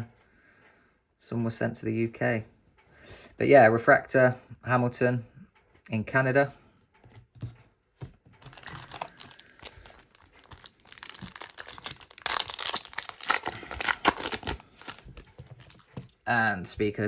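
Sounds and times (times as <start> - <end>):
cards crinkling and rustling: 8.4 - 16.3.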